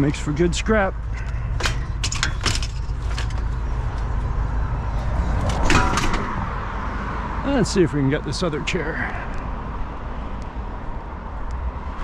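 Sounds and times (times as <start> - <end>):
van engine idling: 0.0 - 6.8
scrap metal knocking: 1.0 - 4.2, 5.3 - 6.6
metal clatter: 1.0 - 4.3, 4.9 - 6.6.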